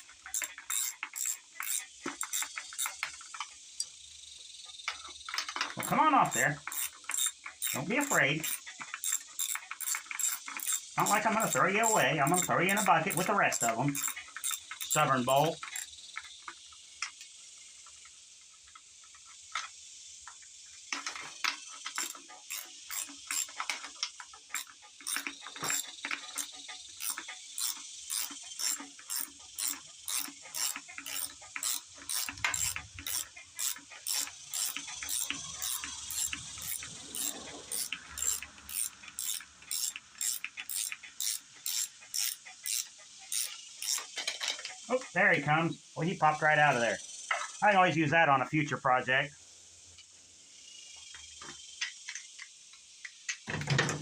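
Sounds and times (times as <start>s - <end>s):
hand ratchet clicking: 0.0s - 3.4s, 5.0s - 16.3s, 21.0s - 44.8s.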